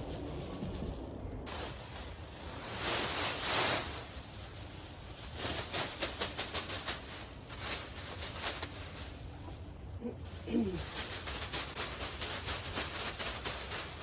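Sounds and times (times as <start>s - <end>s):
wood shavings pouring: 0.0s - 9.4s
shavings rustling and crackling: 0.0s - 14.0s.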